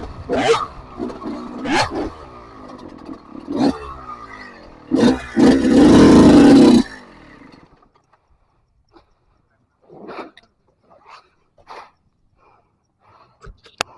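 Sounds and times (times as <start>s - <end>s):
motocross engine revving: 0.0s - 7.9s.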